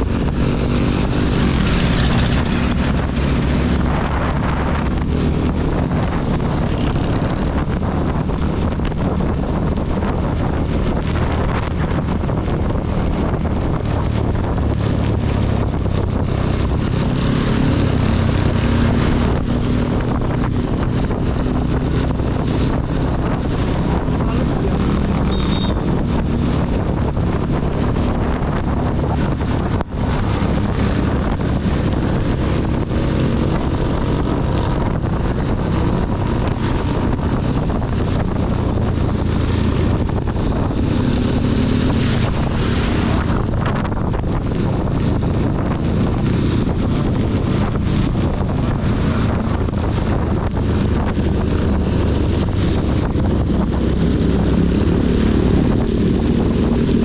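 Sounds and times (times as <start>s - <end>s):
motorcycle engine running: 0.0s - 57.0s
wind noise on microphone: 0.0s - 57.0s
heavy rain: 37.4s - 57.0s.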